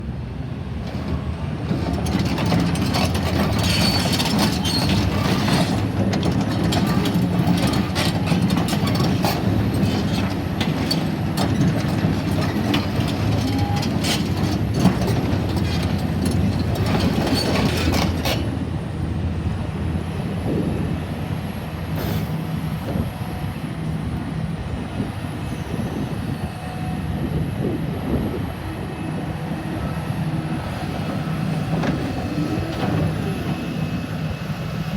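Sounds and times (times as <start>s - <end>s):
excavator diesel engine running: 0.2s - 34.9s
metal clanks and squeals: 0.8s - 18.7s.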